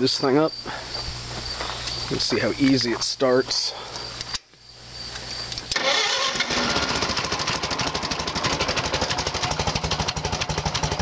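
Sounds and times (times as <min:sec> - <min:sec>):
tractor engine starting and running: 0:05.5 - 0:11.0.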